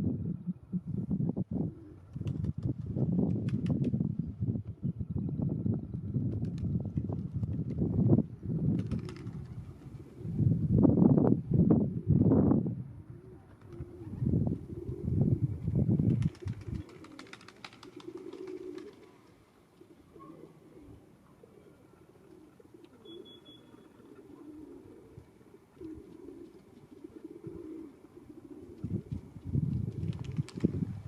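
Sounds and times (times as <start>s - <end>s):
doves cooing: 1.5s - 2.6s, 8.7s - 10.6s, 13.0s - 30.9s.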